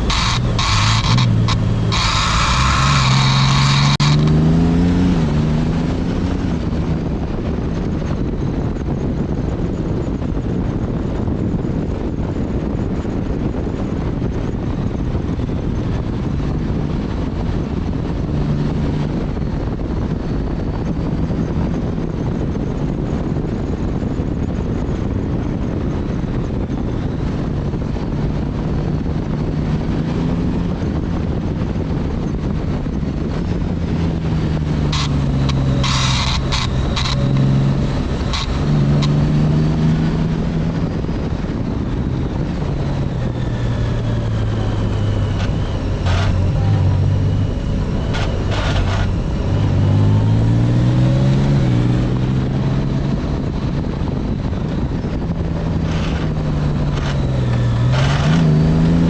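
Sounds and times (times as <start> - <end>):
motorcycle engine running: 0.0 - 59.0
wind rushing over microphone: 0.0 - 59.0.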